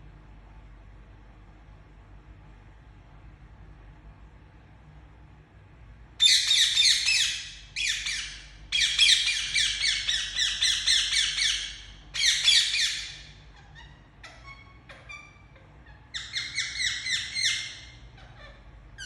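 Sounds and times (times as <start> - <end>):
parakeet chirping calls: 6.2 - 19.0.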